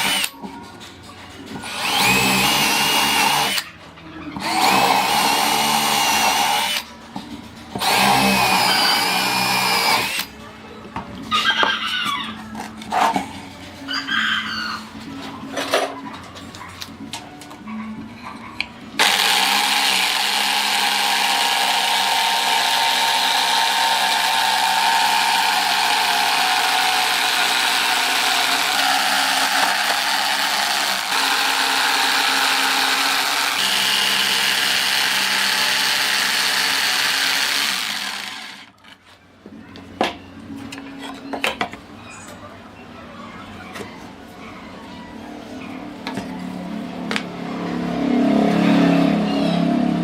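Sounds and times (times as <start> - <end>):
power tool motor whining: 0.0 - 0.4, 1.6 - 3.7, 4.4 - 6.8, 7.8 - 10.3, 19.0 - 38.7.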